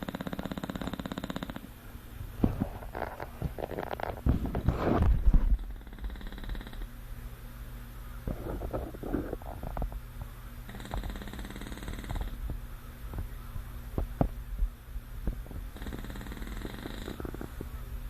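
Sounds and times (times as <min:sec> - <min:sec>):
dog snoring: 0:00.0 - 0:01.7, 0:02.4 - 0:06.9, 0:08.2 - 0:10.0, 0:10.7 - 0:12.4, 0:15.5 - 0:17.7.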